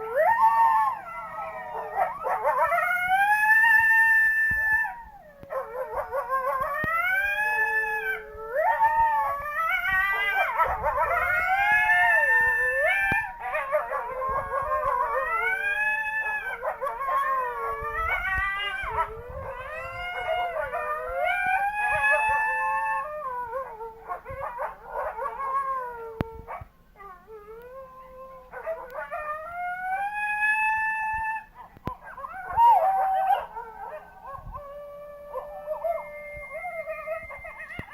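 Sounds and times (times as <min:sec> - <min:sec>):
dogs howling: 0:00.0 - 0:37.9.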